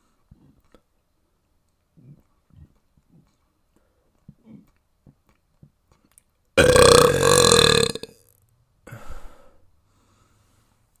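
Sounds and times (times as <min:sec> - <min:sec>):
person burping: 0:06.6 - 0:08.2.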